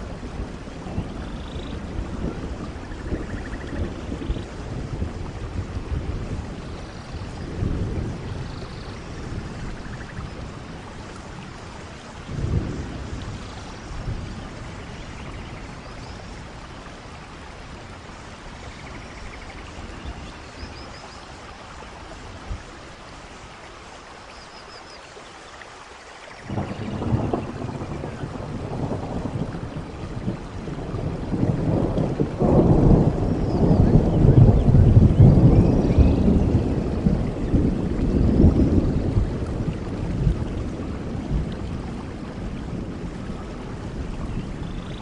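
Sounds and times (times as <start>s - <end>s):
low thunder rumbles: 0.0s - 23.4s, 26.4s - 45.0s
steady rain falling: 0.0s - 45.0s.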